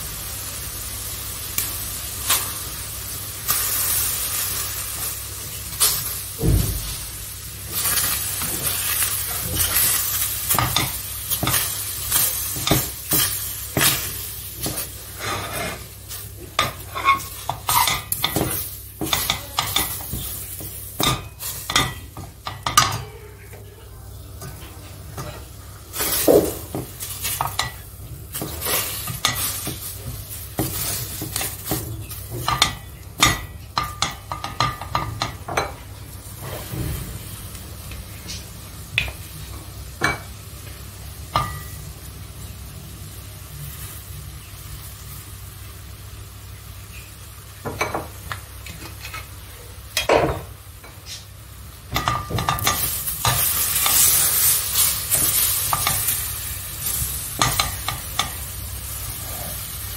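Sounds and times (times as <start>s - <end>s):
food sizzling: 0.0s - 59.9s
spoon scraping a pan: 7.8s - 23.1s, 24.4s - 29.9s, 52.0s - 58.4s.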